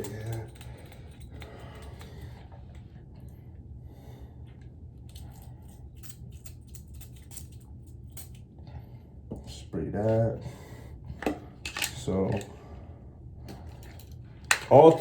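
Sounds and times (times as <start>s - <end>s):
metal parts clicking: 0.0s - 2.1s, 5.1s - 8.4s, 11.2s - 12.5s, 13.5s - 15.0s.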